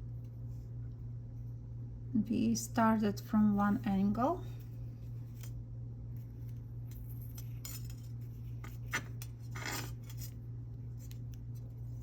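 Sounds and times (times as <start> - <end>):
steady low hum: 0.0 - 12.0
wire scraping: 6.9 - 12.0.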